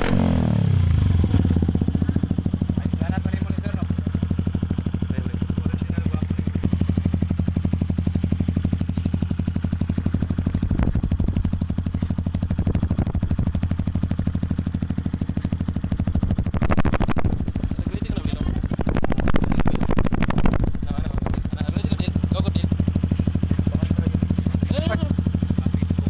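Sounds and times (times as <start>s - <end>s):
motorcycle engine idling: 0.0s - 26.0s.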